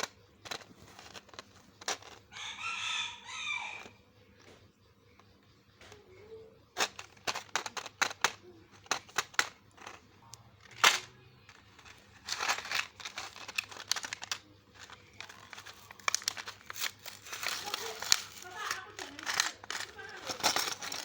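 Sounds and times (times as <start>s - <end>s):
plastic wrapper crinkling and tearing: 11.8s - 21.0s.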